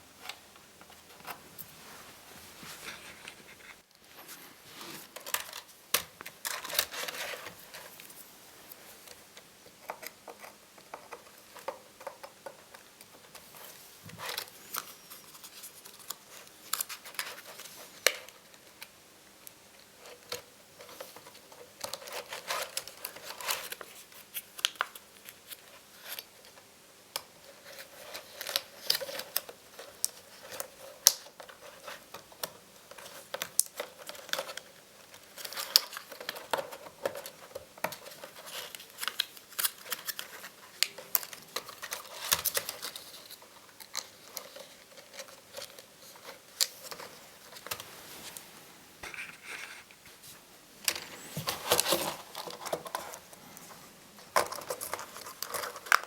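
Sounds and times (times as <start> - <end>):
plastic crinkling: 27.6 - 49.8, 50.8 - 56.0.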